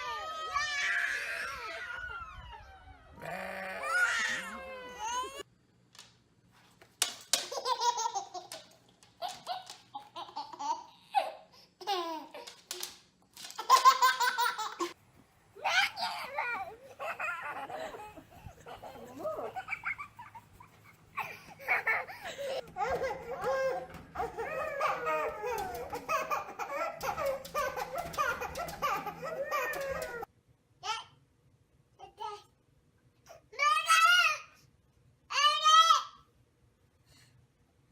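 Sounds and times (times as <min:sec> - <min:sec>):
young child laughing: 0:15.6 - 0:30.3.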